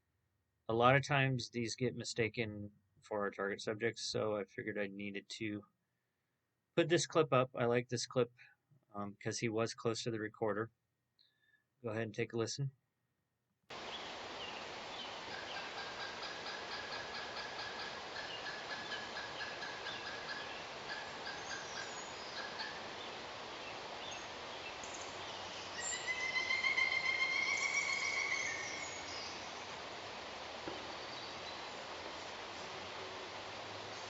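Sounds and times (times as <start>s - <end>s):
woodpecker calling: 13.9s - 33.0s.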